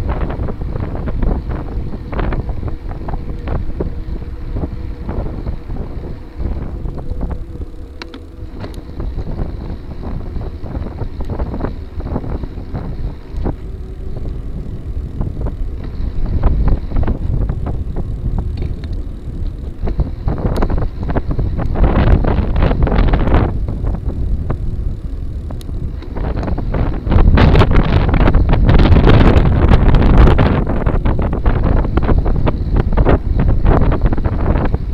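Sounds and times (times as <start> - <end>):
bike rolling over rough trail: 0.0 - 34.9
wind buffeting microphone: 0.0 - 34.9.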